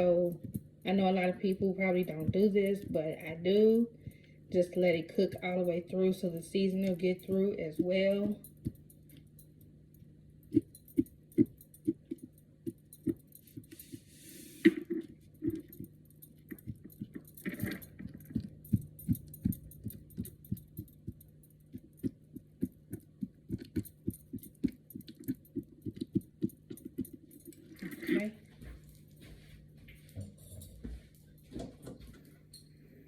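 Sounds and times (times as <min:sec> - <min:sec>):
faint steady hum: 0:00.0 - 0:33.0.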